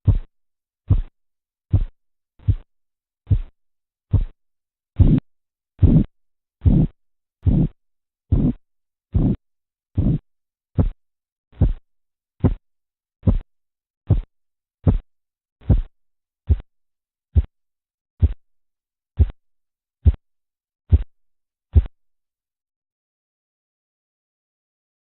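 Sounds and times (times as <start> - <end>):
pulse thumps through stethoscope: 0.0 - 0.3, 0.9 - 1.1, 1.7 - 2.7, 3.3 - 3.5, 4.1 - 4.4, 5.0 - 5.2, 5.8 - 9.4, 10.0 - 10.2, 10.8 - 11.0, 11.6 - 11.8, 12.4 - 12.6, 13.2 - 13.5, 14.1 - 15.0, 15.6 - 15.9, 16.5 - 16.7, 18.2 - 18.4, 19.2 - 19.4, 20.0 - 20.2, 21.7 - 21.9.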